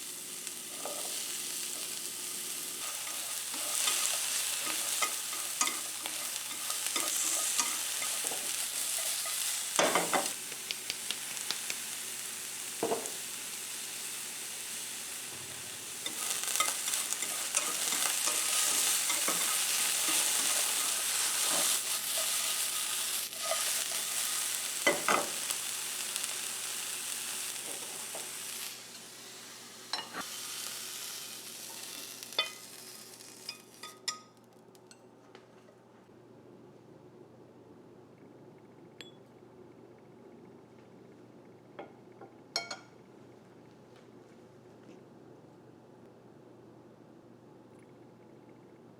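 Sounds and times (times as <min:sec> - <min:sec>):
food sizzling in frying pan: 0:00.0 - 0:34.2
utensil scraping pan: 0:02.8 - 0:10.4, 0:16.0 - 0:22.7.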